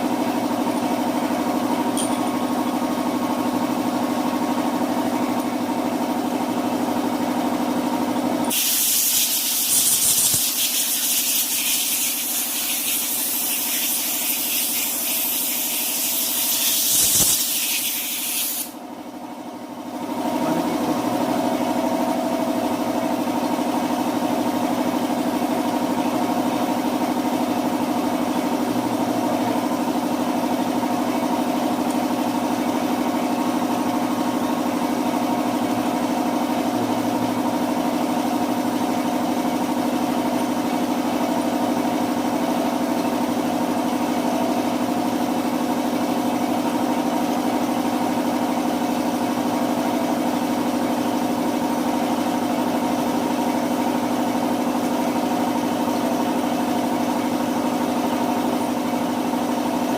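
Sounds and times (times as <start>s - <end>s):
steady machine hum: 0.0s - 8.7s, 18.7s - 42.6s.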